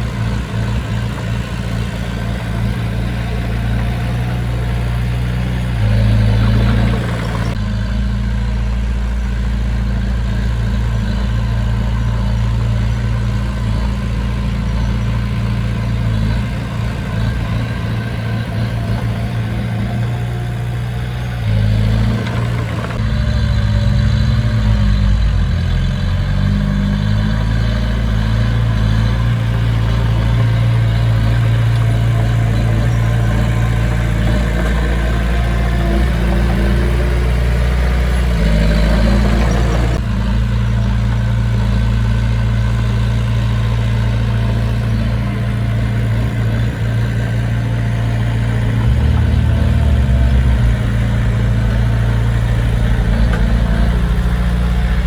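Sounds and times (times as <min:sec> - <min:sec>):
heavy diesel engine idling: 0:00.0 - 0:55.0.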